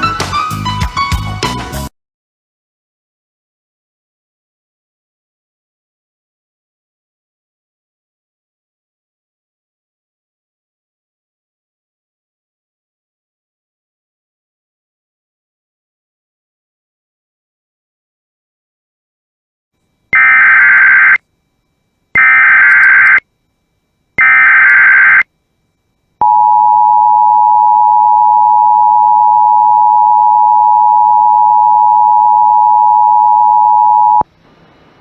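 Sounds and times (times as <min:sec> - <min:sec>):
digital data tone bursts: 0:20.2 - 0:21.2, 0:22.1 - 0:23.2, 0:24.2 - 0:25.3, 0:26.2 - 0:34.2
two-tone attention signal: 0:22.2 - 0:23.2, 0:26.2 - 0:34.2.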